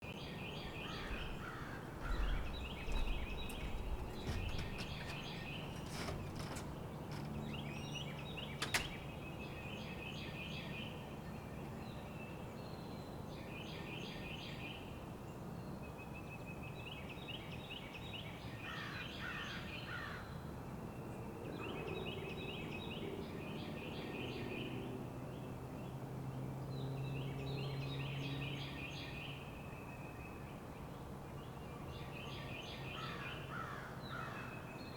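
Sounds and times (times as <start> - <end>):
lower-pitched bird song: 0.0 - 20.0
steady low rumble: 0.7 - 5.8
low thumps: 1.0 - 7.2.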